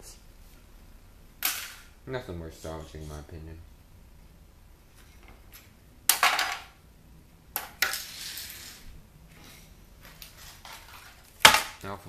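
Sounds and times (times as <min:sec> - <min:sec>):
scrap parts clattering: 0:07.6 - 0:08.9.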